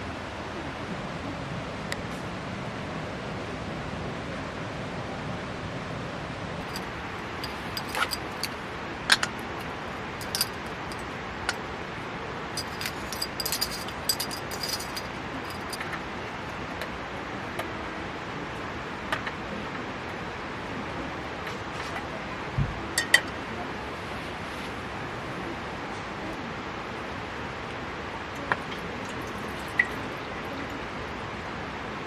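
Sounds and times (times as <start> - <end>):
light metallic clicks: 6.6 - 11.0.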